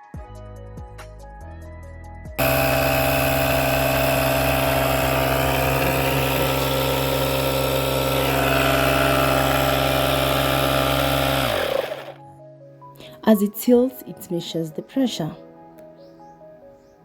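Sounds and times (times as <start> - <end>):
electric air compressor humming: 2.4 - 12.2.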